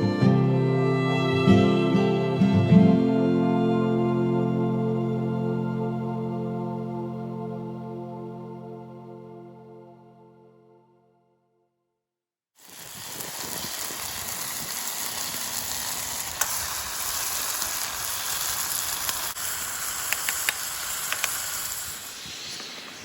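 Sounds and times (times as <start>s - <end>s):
food sizzling in hot oil: 12.6s - 23.0s
oil popping and crackling: 12.6s - 23.0s.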